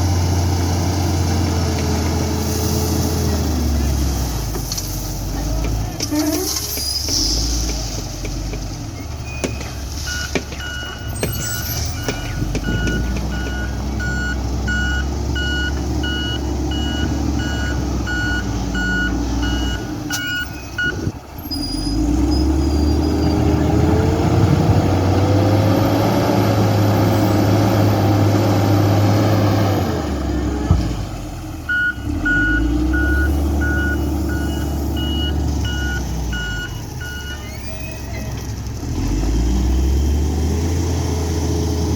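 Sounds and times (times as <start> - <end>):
diesel engine running: 0.0 - 41.9
reversing alarm beeping: 9.0 - 21.1, 31.7 - 38.0.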